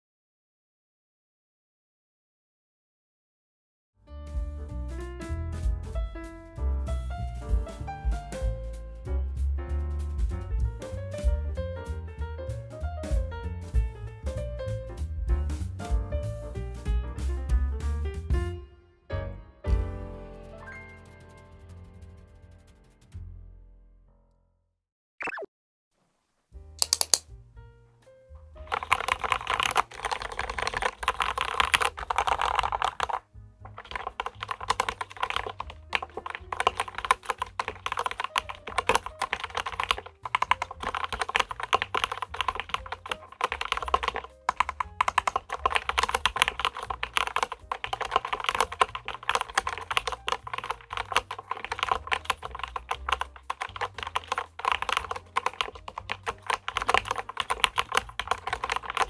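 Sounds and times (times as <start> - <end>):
mechanical keyboard typing: 26.8 - 27.2, 28.6 - 59.0.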